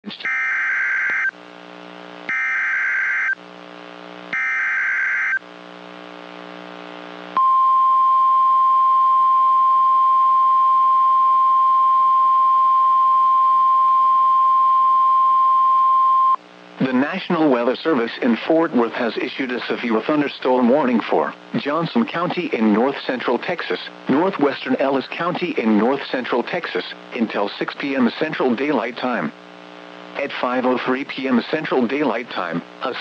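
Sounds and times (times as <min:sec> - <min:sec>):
steady warning alarm tone: 0:00.2 - 0:01.3, 0:02.3 - 0:03.4, 0:04.4 - 0:05.4.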